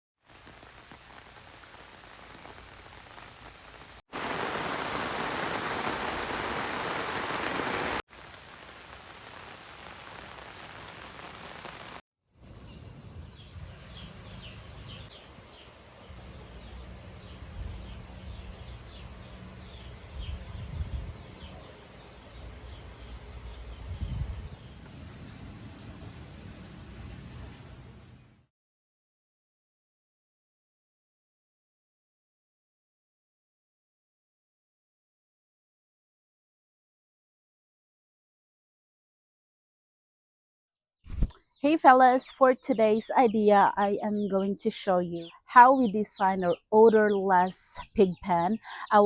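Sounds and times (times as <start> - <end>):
rain falling: 0.3 - 12.0, 24.6 - 28.2.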